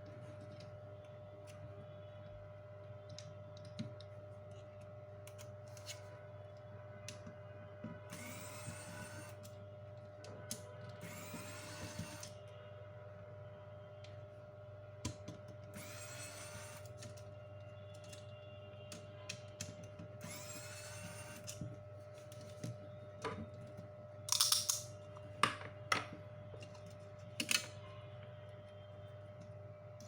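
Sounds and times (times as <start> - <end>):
steady electrical hum: 0.0 - 30.0
small motor whirring: 8.1 - 9.5, 11.0 - 12.4, 15.7 - 17.0, 20.2 - 21.6.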